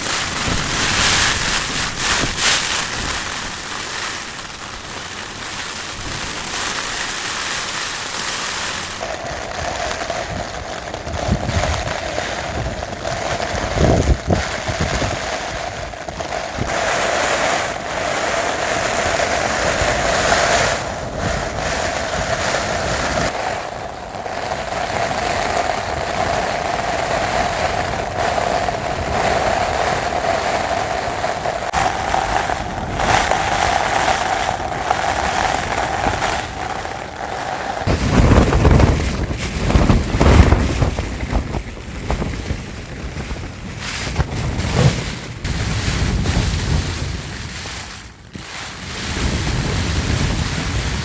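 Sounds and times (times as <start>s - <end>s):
storm wind rushing: 0.0s - 9.0s, 37.8s - 47.8s
wind gusts buffeting microphone: 0.0s - 51.0s.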